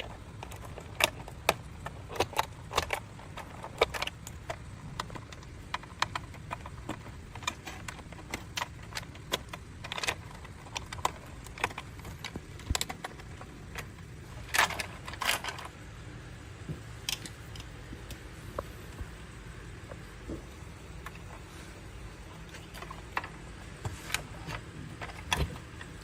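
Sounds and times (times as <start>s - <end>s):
small clicks and knocks: 0.0s - 15.8s, 16.6s - 26.0s
low steady hum: 0.0s - 26.0s
scraping rustles: 18.3s - 26.0s.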